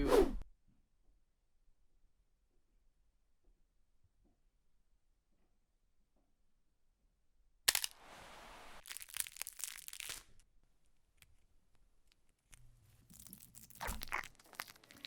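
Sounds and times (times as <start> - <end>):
crinkling tearing crackles: 7.7 - 8.0, 8.8 - 10.4, 11.1 - 15.0.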